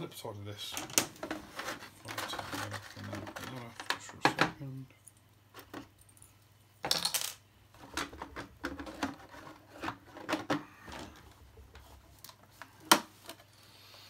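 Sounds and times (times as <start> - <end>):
plastic and metal parts clattering: 0.7 - 4.6, 6.8 - 13.5.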